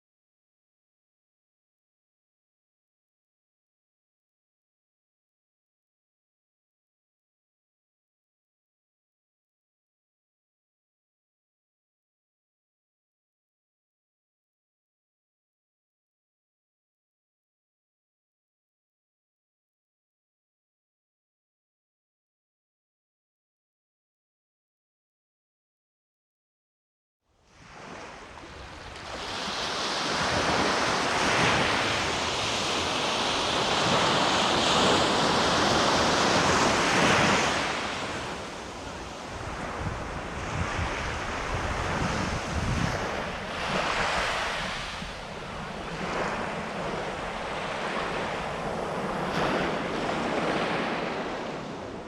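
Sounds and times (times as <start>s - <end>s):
waves washing onto sandy beach: 27.5s - 52.0s
wind buffeting microphone: 28.6s - 52.0s.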